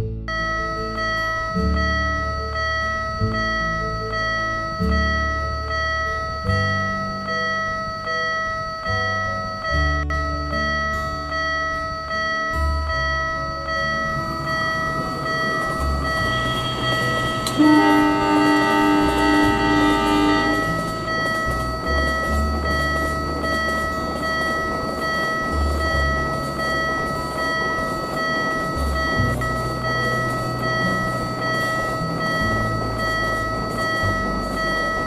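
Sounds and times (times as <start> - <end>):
background music with bass line: 0.0 - 35.0
crossing warning tone: 0.2 - 35.0
train horn: 15.5 - 24.2.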